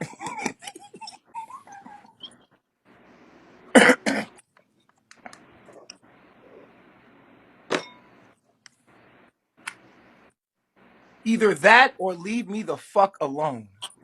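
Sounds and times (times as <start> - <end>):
person coughing: 0.0 - 1.0, 3.7 - 4.4.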